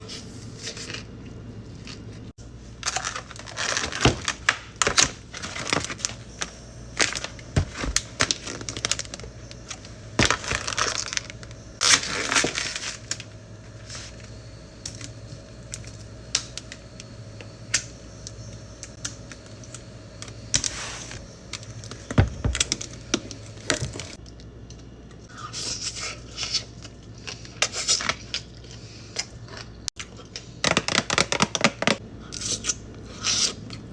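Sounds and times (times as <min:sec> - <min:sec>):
crinkly rustling and crunching: 0:00.6 - 0:17.1.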